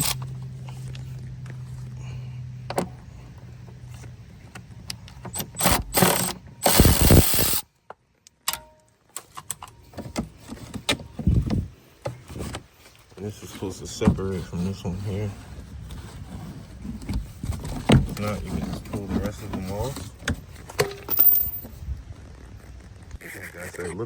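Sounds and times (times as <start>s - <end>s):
hand ratchet clicking: 5.4s - 7.6s
loud rasping burst: 5.6s - 7.6s.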